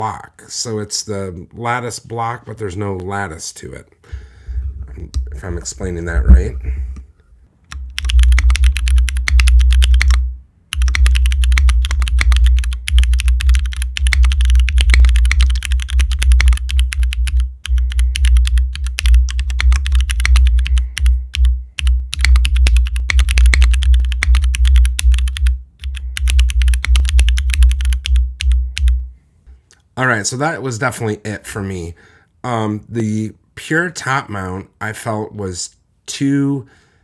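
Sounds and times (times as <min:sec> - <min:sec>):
mechanical keyboard typing: 0:07.7 - 0:29.0.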